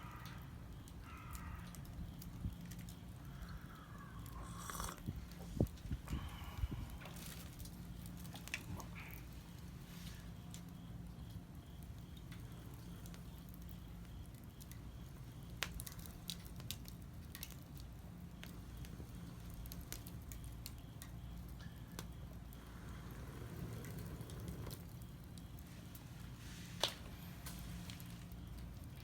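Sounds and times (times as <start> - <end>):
wood fire crackling: 0.3 - 29.0
fire pops and ticks: 0.8 - 3.7, 6.9 - 29.0
low steady rumble: 18.0 - 29.0.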